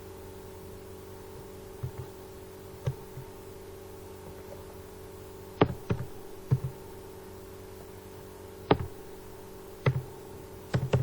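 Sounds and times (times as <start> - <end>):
steady hum: 0.0 - 11.0
sharp taps: 9.8 - 10.1.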